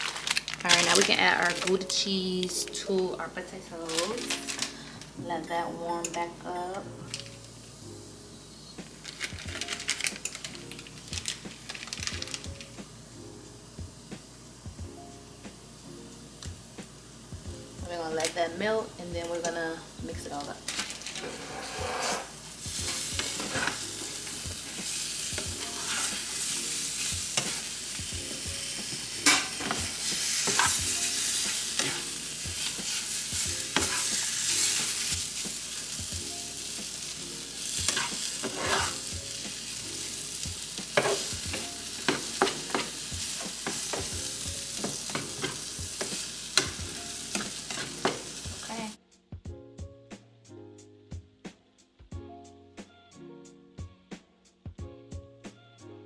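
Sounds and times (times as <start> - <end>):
potatoes sizzling in a frying pan: 0.0 - 49.0
utensil scraping and knocking pan: 21.2 - 23.8, 33.7 - 35.0, 37.8 - 39.0, 41.0 - 44.2.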